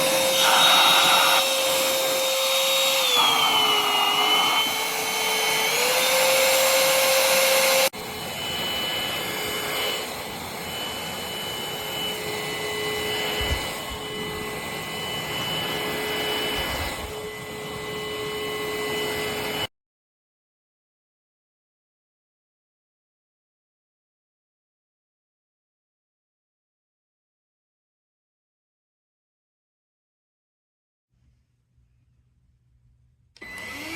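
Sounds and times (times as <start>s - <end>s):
vacuum cleaner whine and airflow: 0.0s - 19.7s, 33.4s - 33.9s.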